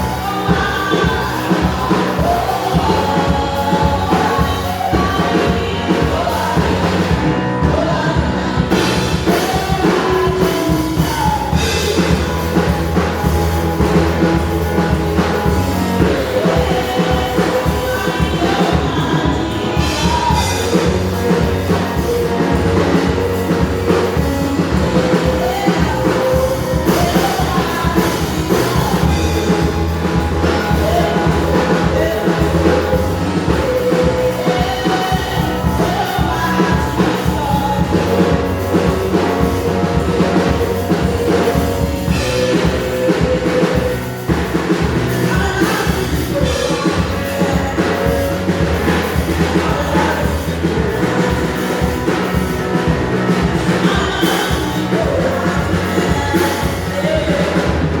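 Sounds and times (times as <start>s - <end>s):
drum kit beat: 0.0s - 58.0s
person singing: 0.0s - 58.0s
worship band music: 0.0s - 58.0s.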